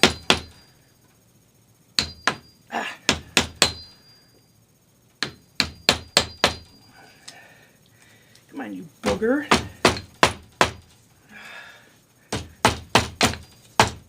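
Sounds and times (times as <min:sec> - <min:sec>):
hammer knocks with metallic ring: 0:00.0 - 0:00.6, 0:02.0 - 0:04.0, 0:05.2 - 0:06.8, 0:09.1 - 0:10.8, 0:12.4 - 0:14.0.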